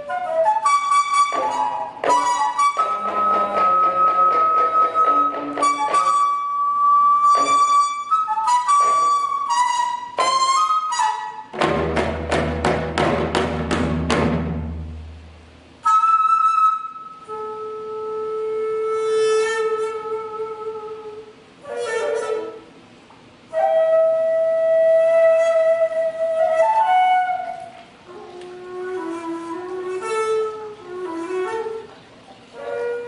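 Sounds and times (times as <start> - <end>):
bamboo flute playing: 0.0 - 12.6, 15.7 - 33.0
deep drum strokes: 11.5 - 15.7.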